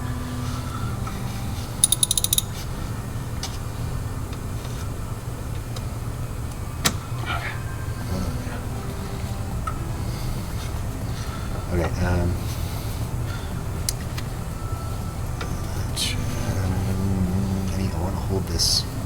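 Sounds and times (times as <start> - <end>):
hand ratchet clicking: 1.8 - 2.6.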